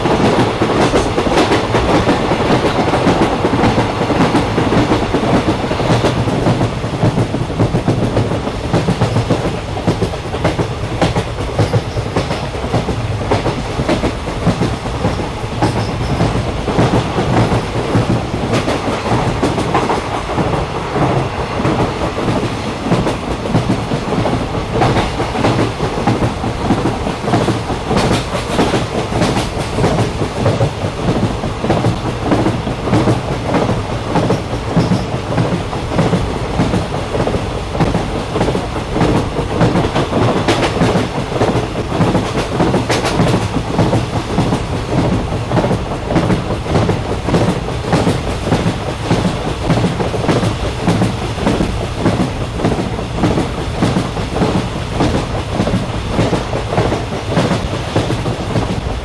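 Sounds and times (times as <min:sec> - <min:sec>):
train rumbling: 0:00.0 - 0:59.0.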